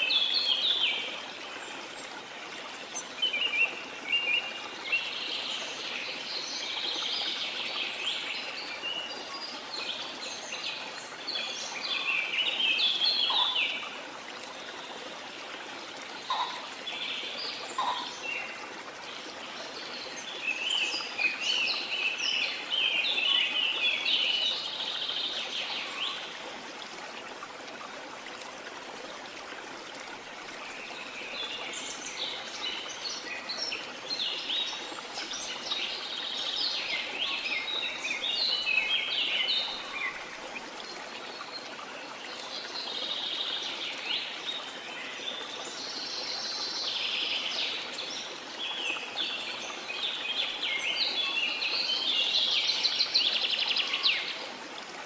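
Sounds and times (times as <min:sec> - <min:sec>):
birds chirping and trilling: 0:11.5 - 0:13.8, 0:16.3 - 0:18.6.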